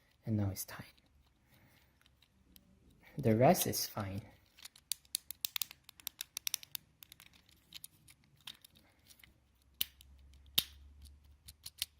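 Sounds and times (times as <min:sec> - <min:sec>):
fidget cube plastic clicks: 0:04.4 - 0:11.9.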